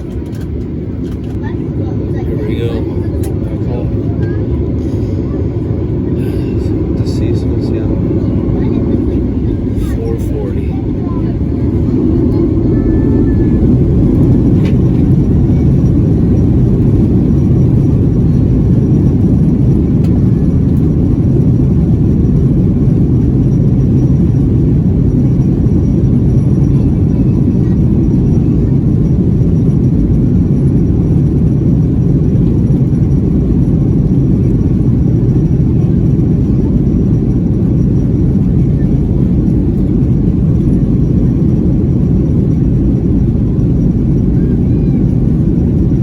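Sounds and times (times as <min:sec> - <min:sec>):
jet engines rumbling in cabin: 0:00.0 - 0:46.0.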